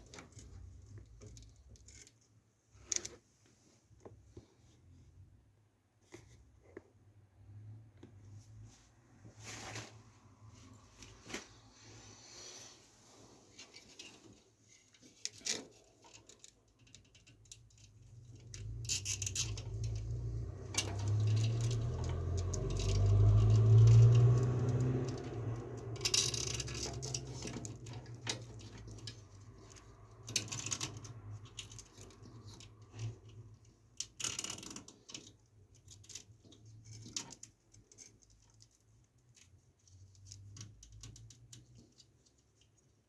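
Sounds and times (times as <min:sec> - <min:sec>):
small hard parts clicking: 0:15.0 - 0:42.8.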